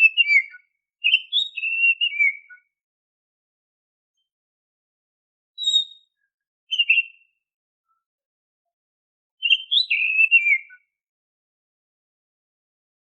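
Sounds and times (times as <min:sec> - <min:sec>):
bird singing whistled song: 0:00.0 - 0:02.8, 0:05.6 - 0:07.4, 0:09.4 - 0:11.0.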